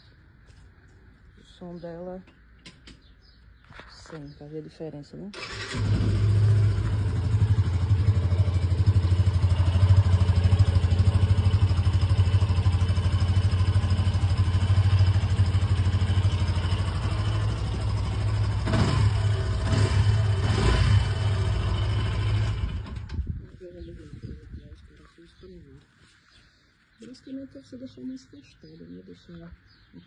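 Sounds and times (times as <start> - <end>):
motorcycle engine running: 5.5 - 25.0.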